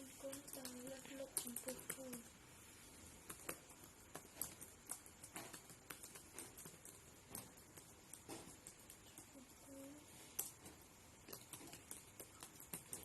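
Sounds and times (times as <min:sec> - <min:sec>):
computer keyboard typing: 0:00.0 - 0:02.3, 0:03.2 - 0:09.4, 0:11.2 - 0:13.0.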